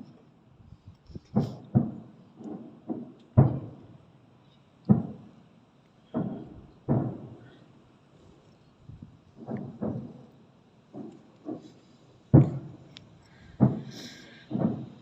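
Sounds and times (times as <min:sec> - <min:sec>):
fireworks bangs: 0:01.2 - 0:04.2, 0:04.8 - 0:05.4, 0:06.0 - 0:07.8, 0:09.0 - 0:15.0.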